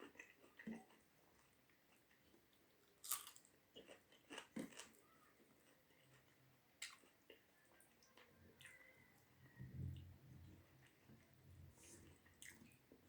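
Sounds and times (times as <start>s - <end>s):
food crunching: 0.0s - 9.0s
person chewing food: 0.0s - 9.0s, 10.7s - 13.0s.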